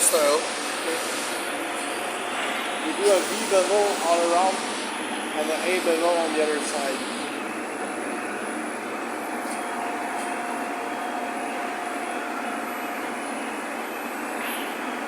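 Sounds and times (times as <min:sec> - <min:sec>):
plasma torch cutting steel: 0:02.3 - 0:07.3.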